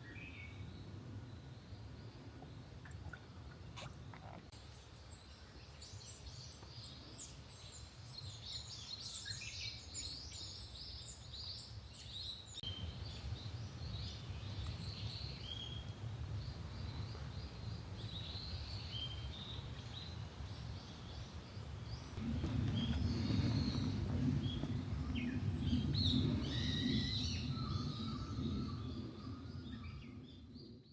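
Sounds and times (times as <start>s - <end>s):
songbirds chirping: 0.0s - 30.9s
steady low rumble: 21.9s - 30.8s.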